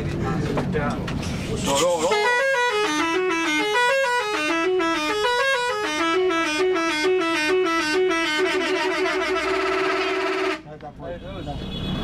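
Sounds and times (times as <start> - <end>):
musical bus horn melody: 1.7 - 10.7.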